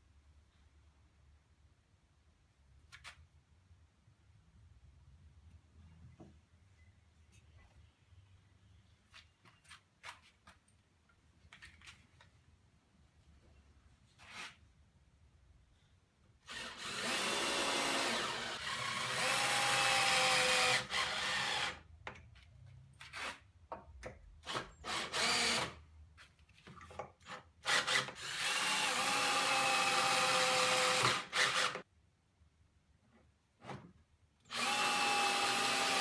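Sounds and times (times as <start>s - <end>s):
power drill driving screws: 16.5s - 21.8s, 24.5s - 25.8s, 27.6s - 31.8s, 34.5s - 36.0s.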